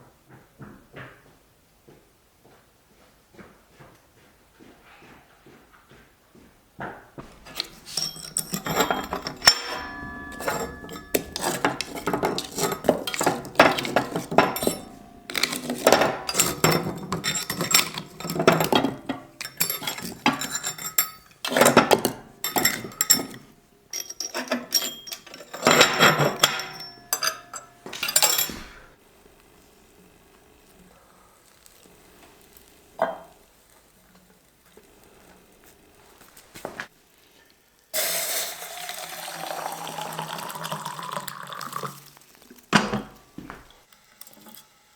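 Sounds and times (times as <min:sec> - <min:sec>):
pots and dishes clattering: 0:07.2 - 0:29.0, 0:42.6 - 0:43.8.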